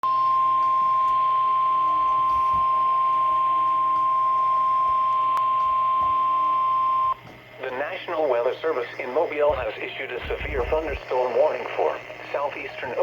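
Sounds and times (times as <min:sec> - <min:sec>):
steady alarm tone: 0:00.0 - 0:07.2.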